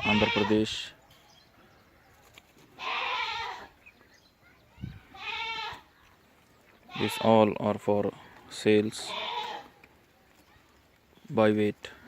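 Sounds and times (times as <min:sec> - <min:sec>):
livestock bleating: 0:00.0 - 0:00.8, 0:02.8 - 0:03.7, 0:05.0 - 0:05.9, 0:06.9 - 0:07.6, 0:08.9 - 0:09.8.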